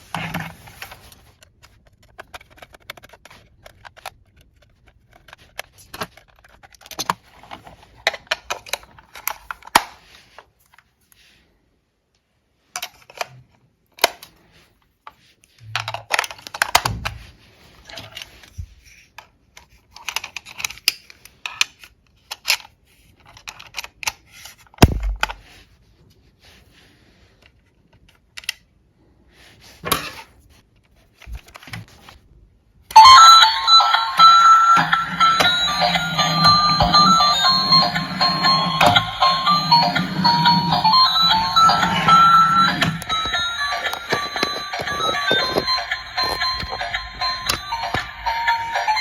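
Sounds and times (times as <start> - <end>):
plastic toy packaging rustling: 0.0 - 11.4, 12.6 - 25.7, 33.0 - 49.0
toy playing electronic tune: 33.0 - 49.0.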